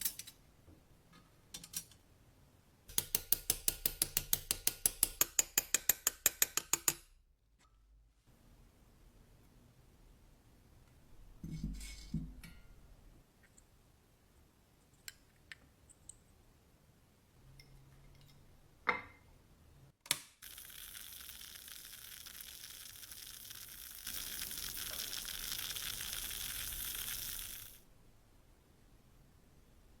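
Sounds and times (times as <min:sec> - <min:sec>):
steady hissing spray: 0:20.4 - 0:27.8.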